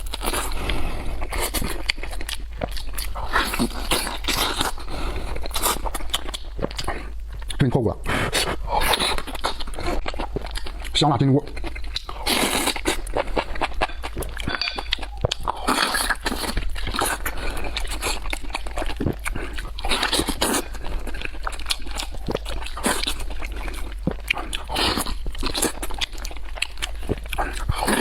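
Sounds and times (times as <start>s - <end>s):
steady low hum: 0.0s - 28.0s
wet chewing and slurping: 0.0s - 28.0s.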